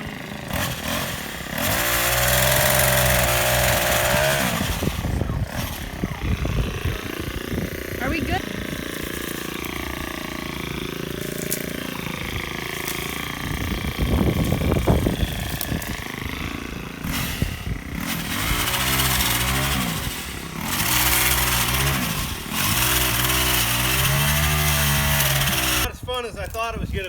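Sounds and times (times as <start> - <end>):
chainsaw cutting branches: 0.0 - 27.0
wood snapping: 8.7 - 16.4.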